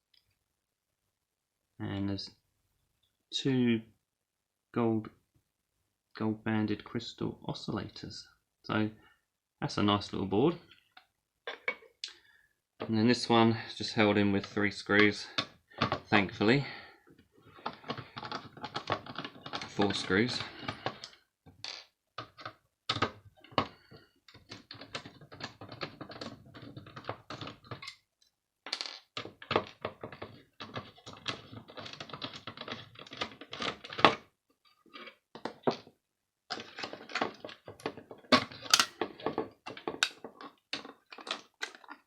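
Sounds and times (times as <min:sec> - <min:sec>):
small parts being handled: 0:17.5 - 0:23.7, 0:28.7 - 0:42.0.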